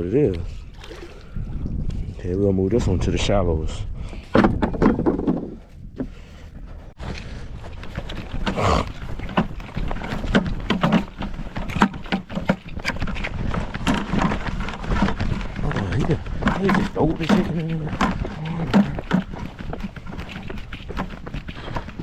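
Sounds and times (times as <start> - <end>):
wind buffeting microphone: 0.0 - 22.0
knocks and clatter: 4.3 - 6.1, 7.8 - 22.0.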